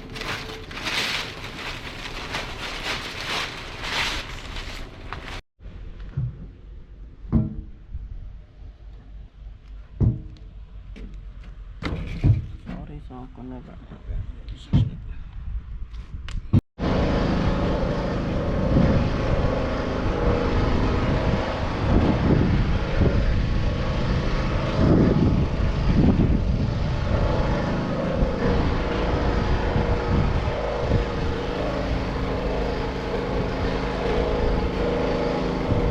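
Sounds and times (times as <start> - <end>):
vehicle engine rumbling: 0.0 - 15.9, 16.5 - 35.9.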